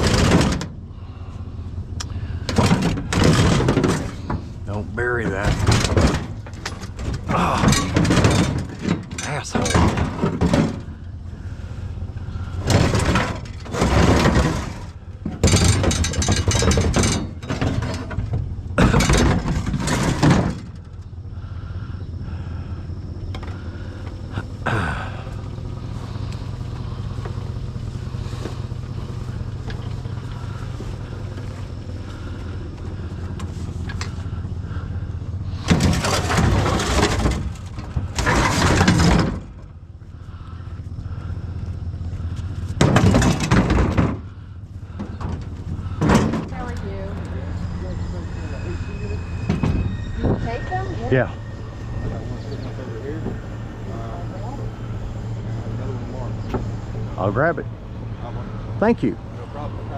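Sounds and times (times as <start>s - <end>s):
vehicle engine droning: 0.0s - 59.9s.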